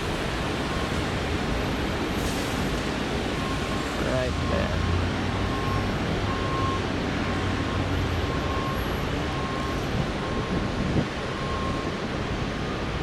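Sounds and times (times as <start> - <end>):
road traffic noise: 0.0 - 13.0
faint high beeps: 3.4 - 6.8.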